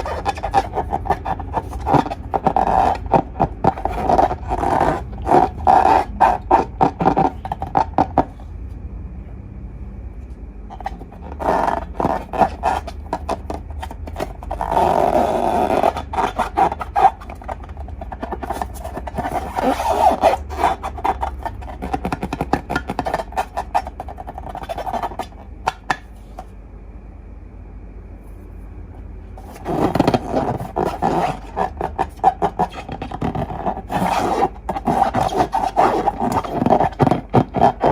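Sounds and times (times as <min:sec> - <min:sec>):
slime squelching stretch: 0:00.0 - 0:08.4
slime squishing and crackling: 0:00.0 - 0:08.4, 0:10.8 - 0:25.9, 0:29.4 - 0:37.9.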